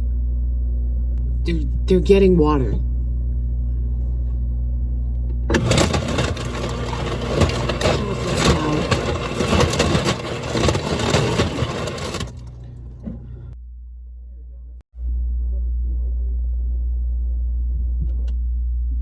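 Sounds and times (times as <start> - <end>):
refrigerator low hum: 0.0 - 13.8
water dispenser rushing and clicking: 5.5 - 13.3.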